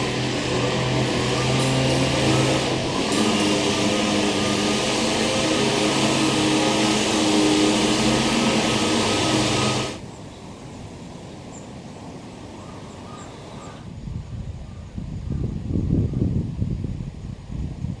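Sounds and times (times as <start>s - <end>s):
vehicle engine humming: 0.0s - 10.1s.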